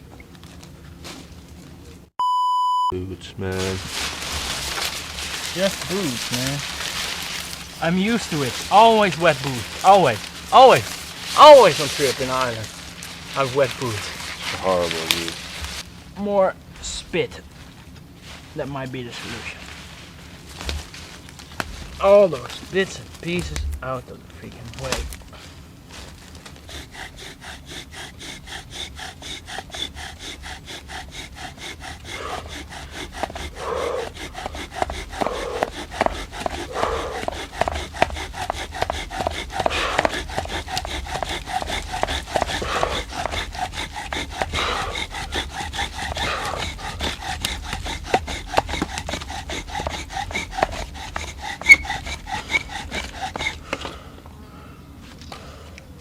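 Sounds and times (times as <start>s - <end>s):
bow drill spindle spinning: 37.6s - 53.6s.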